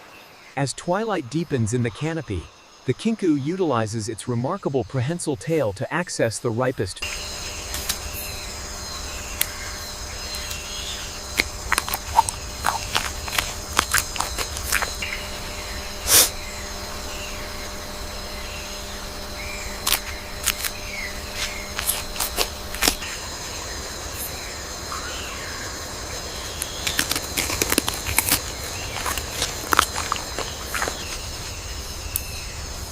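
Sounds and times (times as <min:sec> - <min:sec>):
steady forest hiss: 0:00.0 - 0:32.9
sharp snaps and rustles: 0:11.3 - 0:15.2, 0:19.8 - 0:23.3, 0:26.4 - 0:32.3.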